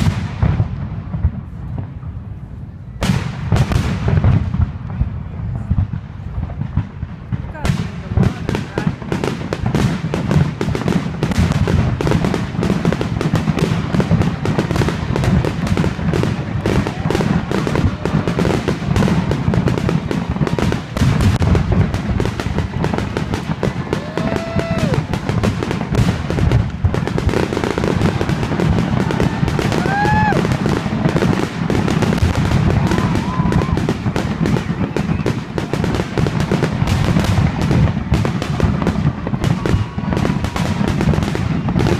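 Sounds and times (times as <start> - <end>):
fireworks bangs and booms: 0.0 - 41.9
fireworks whistles: 7.5 - 41.9.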